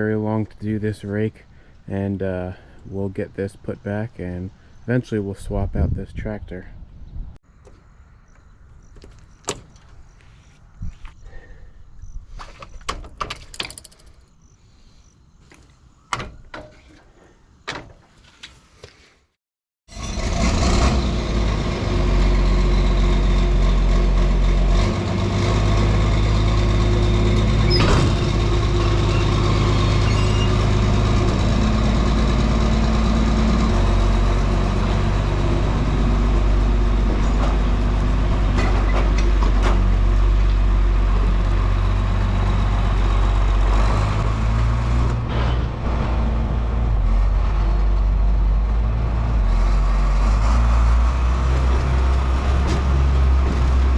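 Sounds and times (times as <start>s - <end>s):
tractor diesel engine running: 20.0s - 53.9s.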